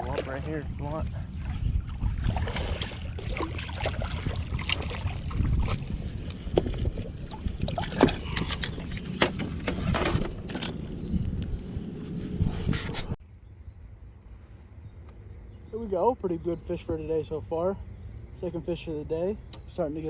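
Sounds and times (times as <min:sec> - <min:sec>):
wind rumble on microphone: 0:00.0 - 0:14.1
splashing in shallow water: 0:01.2 - 0:09.1.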